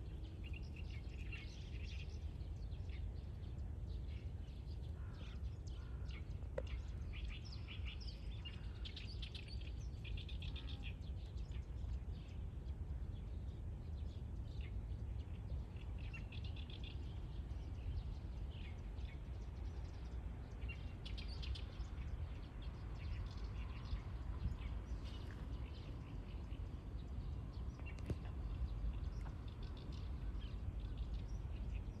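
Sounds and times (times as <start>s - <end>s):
steady low rumble: 0.0s - 32.0s
small birds chirping: 13.8s - 32.0s.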